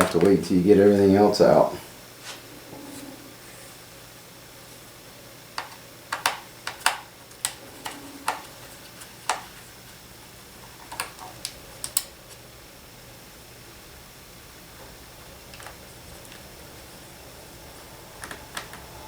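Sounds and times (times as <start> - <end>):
screwdriver tapping plastic case: 5.6 - 7.6.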